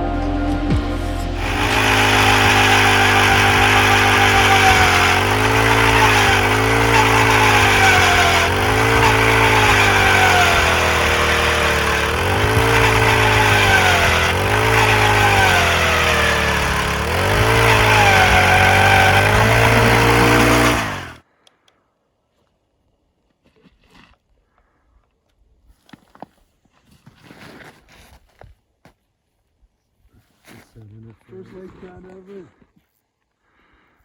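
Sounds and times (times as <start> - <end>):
electronic music with pulsing bass: 0.0 - 1.5.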